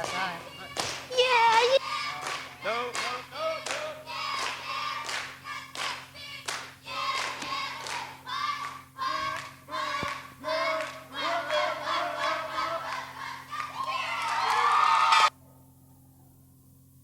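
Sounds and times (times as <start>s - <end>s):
hand clapping: 0.0s - 11.0s
youth choir singing: 0.0s - 15.3s
low electrical hum: 0.0s - 17.0s.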